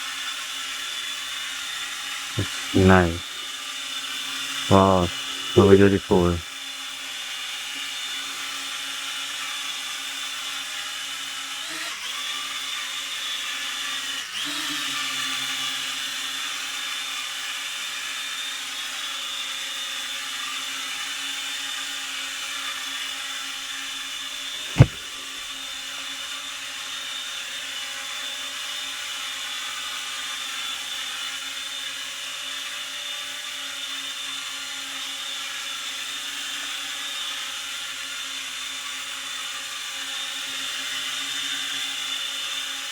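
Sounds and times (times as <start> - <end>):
sharp knock: 24.7 - 25.0.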